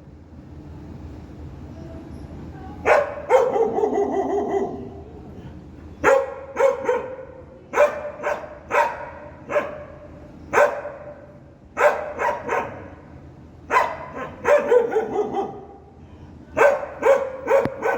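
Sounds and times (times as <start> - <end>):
dog barking: 2.8 - 5.0, 6.0 - 11.2, 11.8 - 13.0, 13.7 - 15.8, 16.6 - 17.9.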